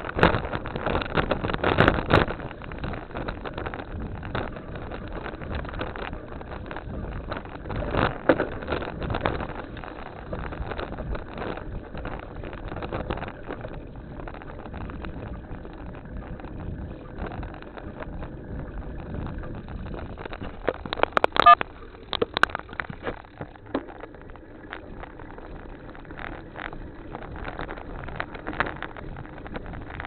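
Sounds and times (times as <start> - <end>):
bicycle rattling over bumps: 0.0 - 30.0
bicycle tyres rolling: 0.0 - 30.0.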